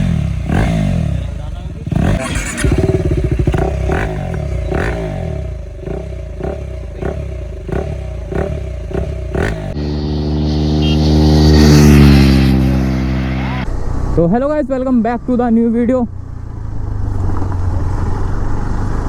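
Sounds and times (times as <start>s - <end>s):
motorcycle engine revving: 0.0s - 14.1s
motorcycle passing by: 0.0s - 14.2s, 16.1s - 19.0s.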